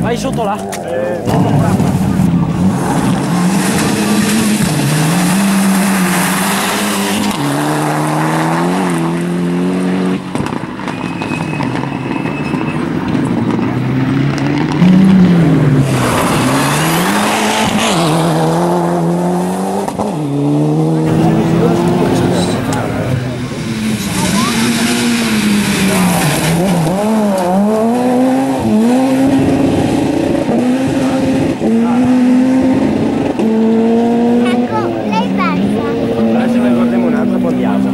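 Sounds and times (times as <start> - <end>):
car engine revving hard: 1.2 - 11.9, 12.6 - 37.9
tyre squeal: 10.8 - 13.0.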